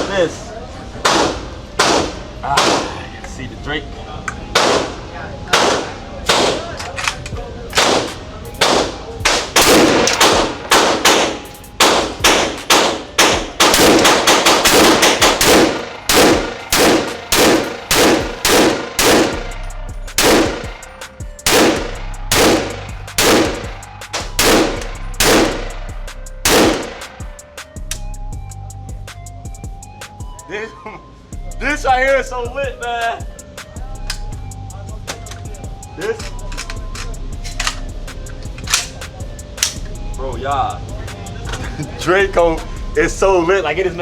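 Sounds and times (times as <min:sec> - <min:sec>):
pistol gunshots with echo: 0:01.0 - 0:03.0, 0:04.5 - 0:06.8, 0:07.7 - 0:19.6, 0:20.2 - 0:20.8, 0:21.5 - 0:25.8, 0:26.4 - 0:27.3.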